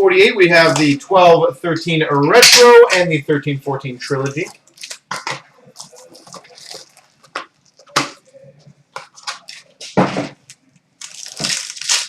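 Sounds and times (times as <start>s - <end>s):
cardboard and wrapper crinkling: 4.4s - 8.3s, 8.9s - 12.0s.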